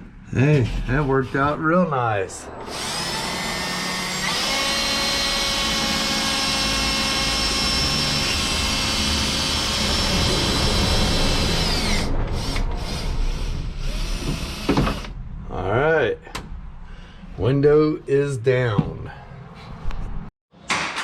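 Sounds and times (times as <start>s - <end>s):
power tool motor running: 2.6s - 15.1s.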